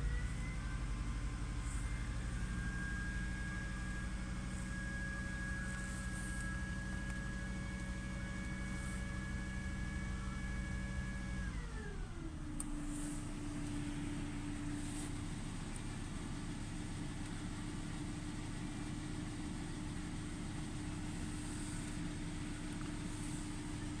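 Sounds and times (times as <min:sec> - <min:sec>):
car engine idling: 0:11.5 - 0:24.0.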